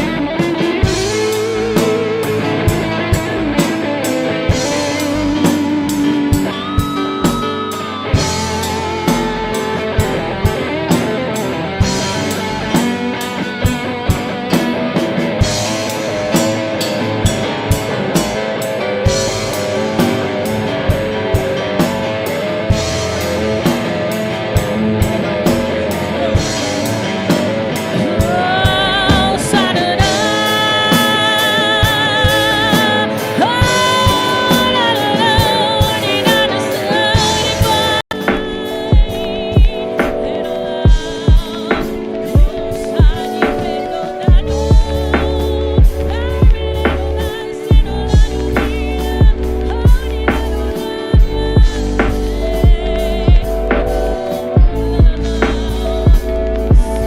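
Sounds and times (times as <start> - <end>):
band music with drums and guitar: 0.0 - 57.0
person singing with vibrato: 18.6 - 57.0.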